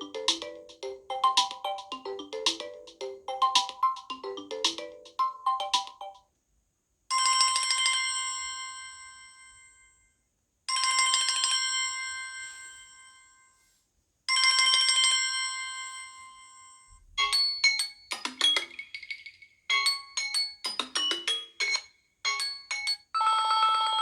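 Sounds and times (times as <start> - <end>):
bell-like ringtone trill: 0.0 - 6.2, 17.2 - 24.0
melodic ringtone: 0.0 - 6.2, 17.2 - 24.0
ringtone with quick notes: 0.0 - 6.2, 17.0 - 24.0.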